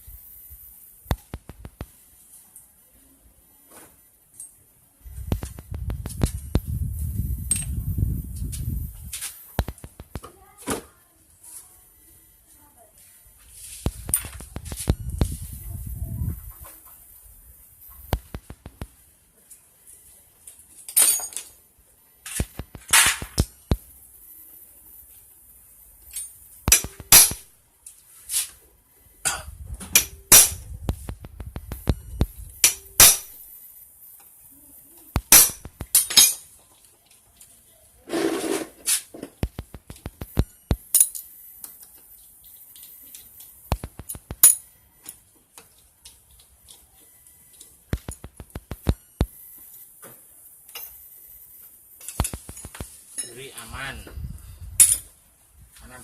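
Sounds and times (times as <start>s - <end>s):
metal tools clinking: 20.8s - 21.6s, 29.3s - 30.6s, 35.4s - 36.5s, 40.9s - 41.4s, 44.4s - 44.7s
faint steady hiss: 38.8s - 56.0s.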